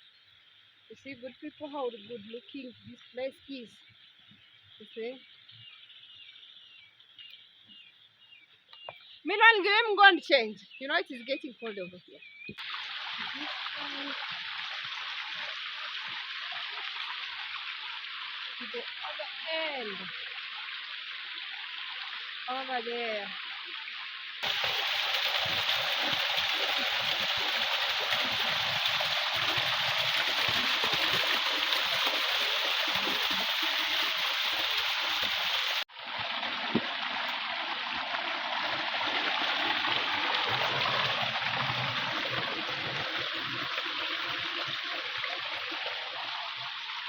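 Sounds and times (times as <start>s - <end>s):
river water rushing: 24.4s - 43.6s.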